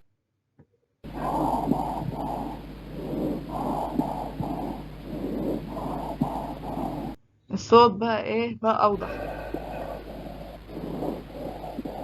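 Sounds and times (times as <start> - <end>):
steady low hum: 1.0 - 12.0
whispered words through stethoscope: 8.8 - 10.1.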